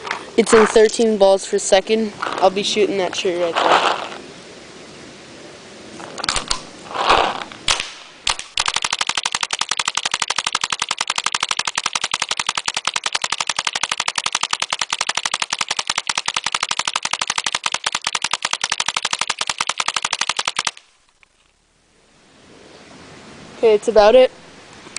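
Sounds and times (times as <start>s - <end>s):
single paintball shots: 6.3s - 10.8s
paintball gun rapid fire: 6.4s - 20.8s.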